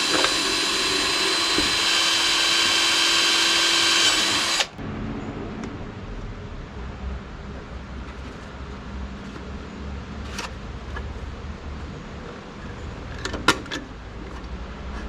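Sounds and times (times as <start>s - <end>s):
steady low hum: 3.8s - 13.1s.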